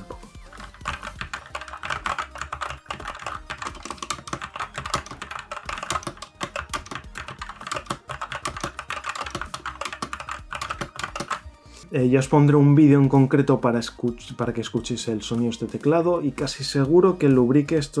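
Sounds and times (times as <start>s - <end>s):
fast typing on keyboard: 0.0s - 11.5s.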